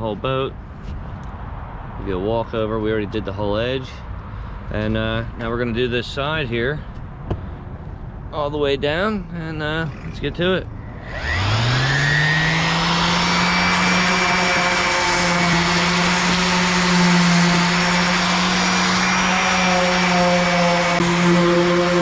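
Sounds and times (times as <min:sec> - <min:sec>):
electric sander running: 0:10.9 - 0:22.0.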